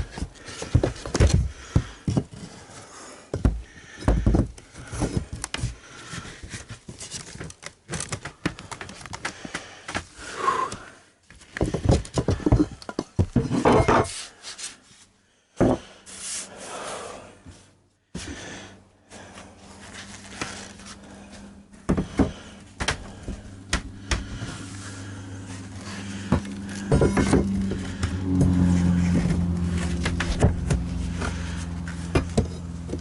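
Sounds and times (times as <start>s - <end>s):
wooden panels knocking and rubbing: 11.6s - 14.2s, 26.1s - 33.0s
low steady hum: 18.0s - 33.0s.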